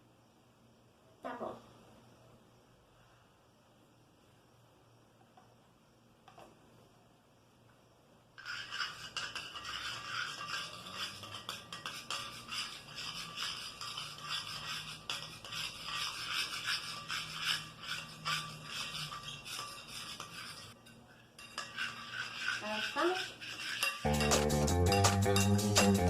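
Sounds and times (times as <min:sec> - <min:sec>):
spoon scraping a plate: 0:08.4 - 0:26.0.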